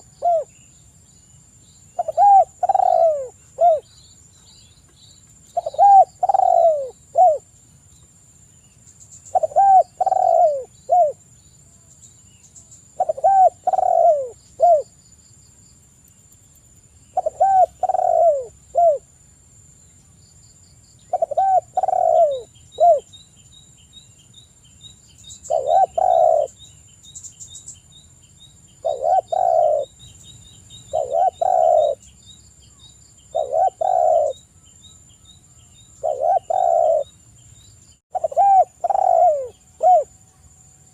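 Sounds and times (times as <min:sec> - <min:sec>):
dove cooing: 0:00.0 - 0:00.6, 0:02.0 - 0:03.9, 0:05.6 - 0:07.5, 0:09.3 - 0:11.2, 0:13.0 - 0:14.9, 0:17.2 - 0:19.1, 0:21.1 - 0:23.1, 0:25.5 - 0:26.6, 0:28.8 - 0:30.0, 0:30.9 - 0:32.0, 0:33.3 - 0:34.5, 0:36.0 - 0:37.1, 0:38.1 - 0:40.2.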